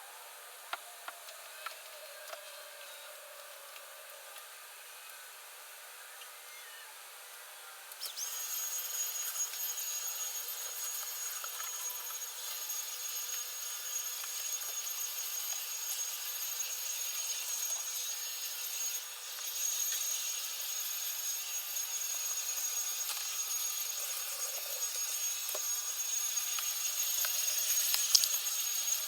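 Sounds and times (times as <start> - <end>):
vacuum cleaner running: 8.1 - 29.0.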